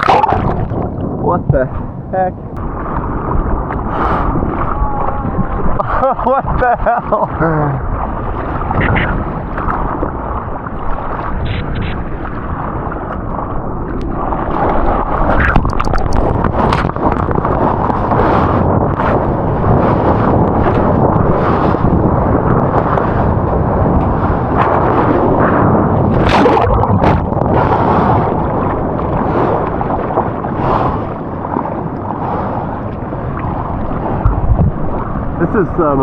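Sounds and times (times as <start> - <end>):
sharp water splashes: 0.0 - 1.1, 26.1 - 27.6
surf crashing: 0.0 - 13.2, 13.9 - 36.0.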